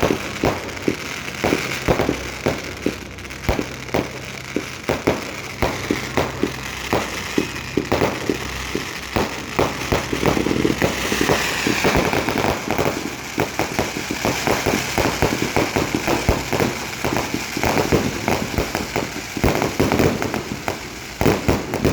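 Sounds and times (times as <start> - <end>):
fireworks hiss: 0.0 - 21.9
fireworks popping and banging: 0.0 - 21.9.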